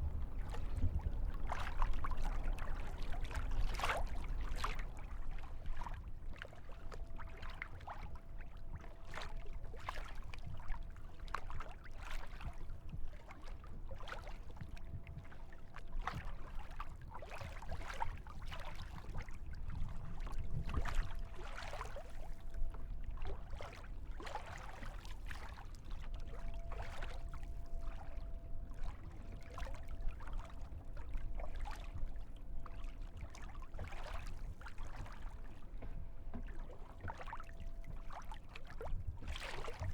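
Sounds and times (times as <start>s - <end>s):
steady low rumble: 0.0s - 5.9s
paddle splashes: 0.0s - 8.0s, 20.2s - 22.5s, 23.1s - 28.2s, 29.4s - 39.9s
water lapping against hull: 0.0s - 39.9s.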